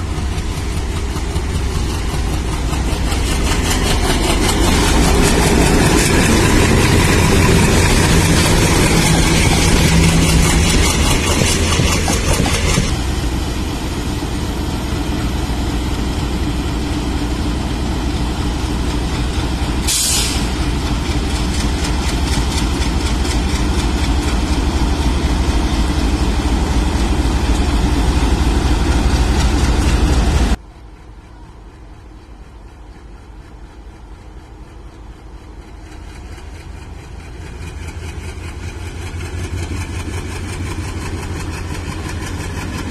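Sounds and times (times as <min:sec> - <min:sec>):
diesel locomotive engine running: 0:00.0 - 0:42.9
short hiss: 0:19.9 - 0:20.6.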